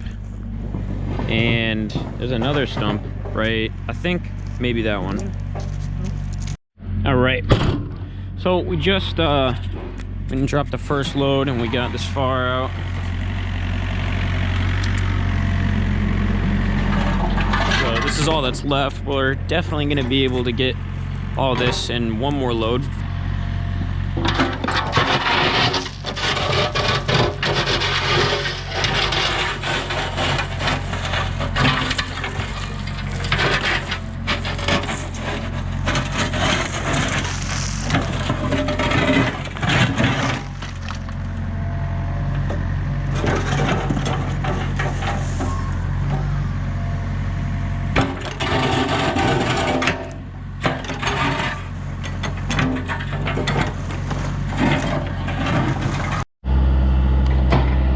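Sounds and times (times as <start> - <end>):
bucket scraping concrete rubble: 0.0 - 6.6, 9.2 - 13.2, 16.2 - 20.7, 21.4 - 22.9, 24.2 - 41.4, 43.1 - 46.4, 48.0 - 56.3
excavator engine running: 0.0 - 7.2, 8.0 - 57.9.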